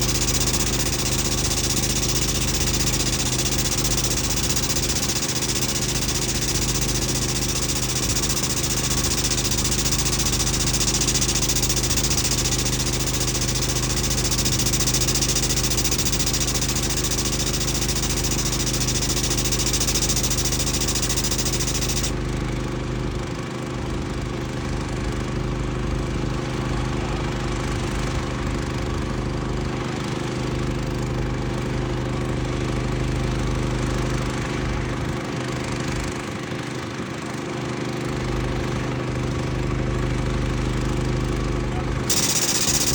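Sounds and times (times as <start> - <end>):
engine idling: 0.0 - 22.1.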